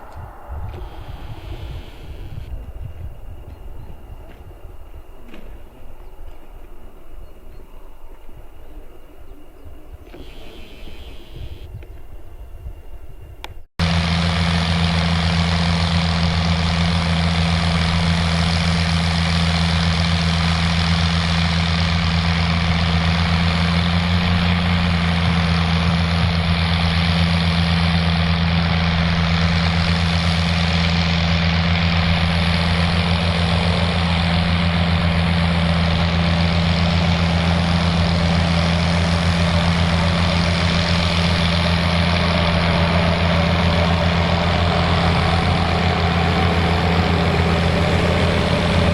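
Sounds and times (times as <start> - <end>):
tractor diesel engine running: 0.0 - 6.4, 10.0 - 11.8, 13.8 - 48.9.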